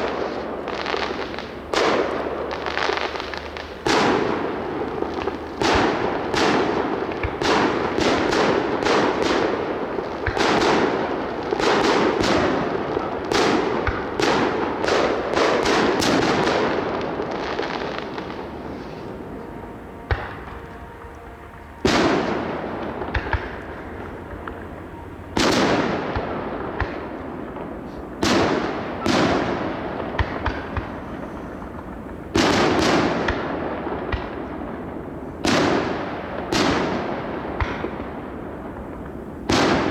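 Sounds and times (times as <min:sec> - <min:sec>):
fireworks bursting: 0:00.0 - 0:39.9
loud fireworks bangs with echo: 0:00.0 - 0:39.9.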